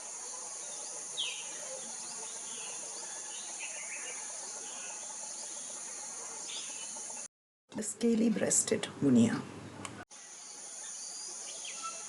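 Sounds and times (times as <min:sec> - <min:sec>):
high-pitched insect drone: 0:10.2 - 0:12.0.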